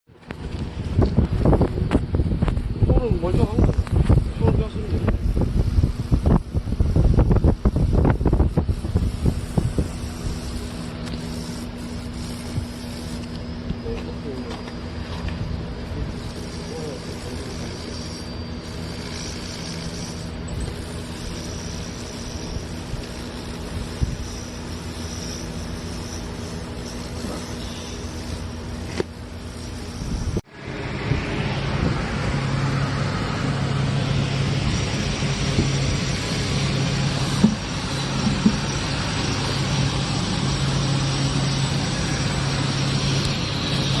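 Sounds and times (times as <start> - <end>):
electrical hum with tones: 0.1 - 44.0
hiss: 5.3 - 14.0, 16.1 - 30.4.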